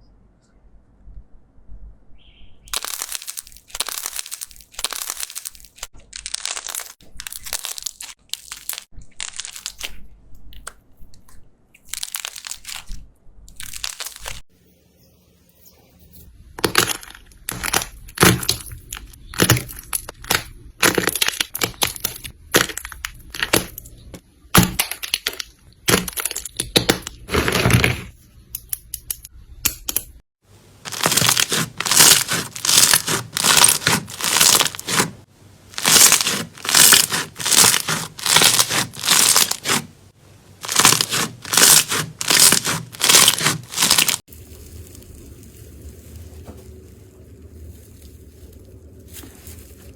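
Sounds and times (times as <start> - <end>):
slime crackling and crunching: 2.7 - 10.7, 11.8 - 14.5, 16.6 - 28.1, 30.8 - 39.9, 40.6 - 49.9.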